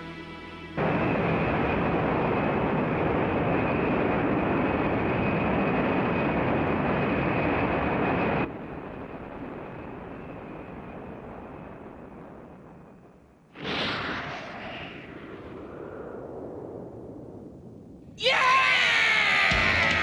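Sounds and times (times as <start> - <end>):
loud rushing noise: 13.6 - 16.4.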